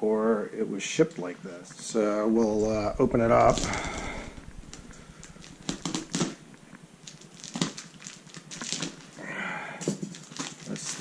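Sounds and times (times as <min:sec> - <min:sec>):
packing tape rasping: 0:03.4 - 0:09.2, 0:09.9 - 0:11.0.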